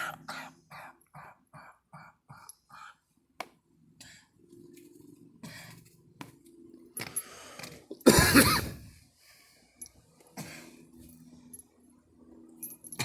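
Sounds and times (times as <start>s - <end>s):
girl coughing: 8.0s - 8.9s.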